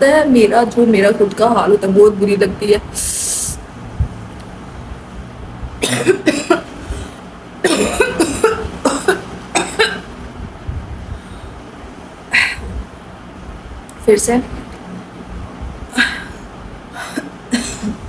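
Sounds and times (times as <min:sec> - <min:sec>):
woman coughing: 0:05.8 - 0:06.7, 0:07.6 - 0:10.1, 0:17.0 - 0:18.0.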